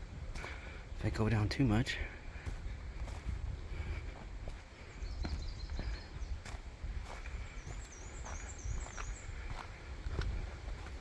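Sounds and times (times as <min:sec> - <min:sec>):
footsteps on rocky trail: 0:00.0 - 0:11.0
small bird singing: 0:04.7 - 0:09.8.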